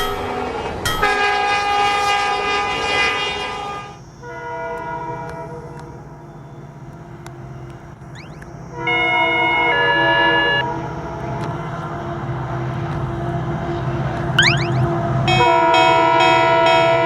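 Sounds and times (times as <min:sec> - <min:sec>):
train horn blasts: 0:00.0 - 0:06.6, 0:08.7 - 0:12.3, 0:15.2 - 0:17.0.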